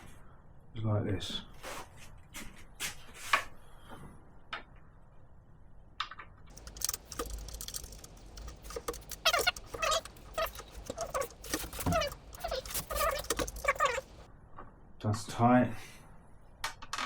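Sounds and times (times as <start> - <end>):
small metal parts clicking and rattling: 6.5 - 14.3.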